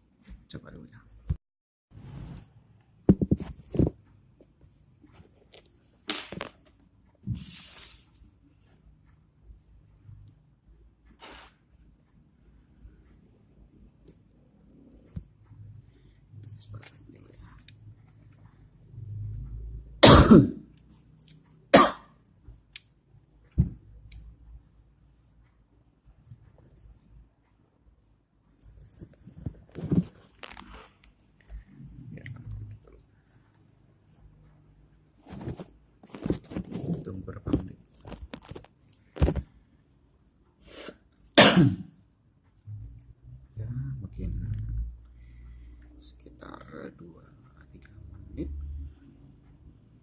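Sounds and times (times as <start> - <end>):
person coughing: 20.0 - 20.6, 21.8 - 22.1, 41.4 - 41.9.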